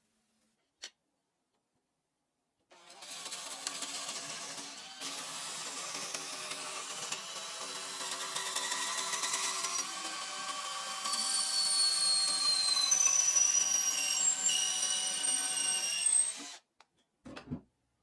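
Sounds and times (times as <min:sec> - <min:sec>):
power tool whining on wood: 0:02.7 - 0:16.6.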